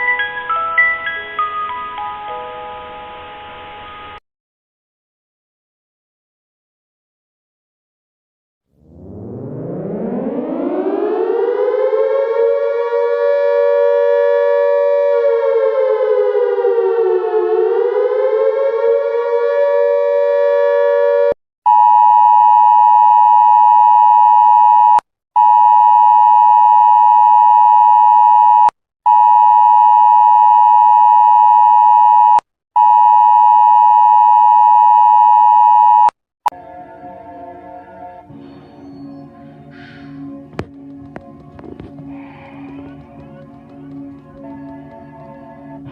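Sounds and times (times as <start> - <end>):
civil defense siren wailing: 8.8 - 21.4.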